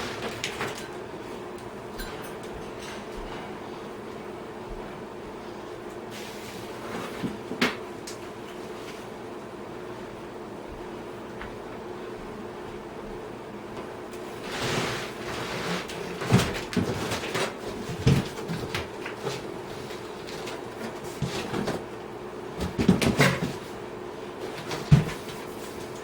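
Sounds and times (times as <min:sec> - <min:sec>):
cardboard scraping rustle: 0:14.4 - 0:21.8.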